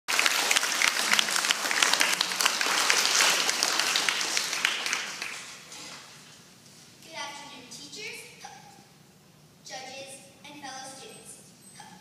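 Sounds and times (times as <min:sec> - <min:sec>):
audience applauding: 0:00.1 - 0:06.1.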